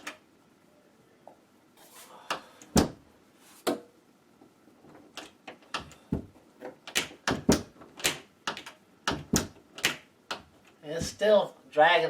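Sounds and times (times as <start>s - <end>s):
door knocking against frame: 2.8s - 3.0s, 7.0s - 8.2s, 9.1s - 10.0s.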